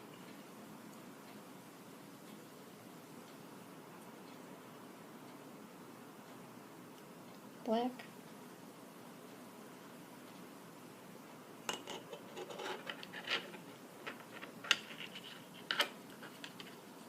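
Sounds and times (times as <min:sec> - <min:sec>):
tools clicking and scratching: 0:11.7 - 0:16.8.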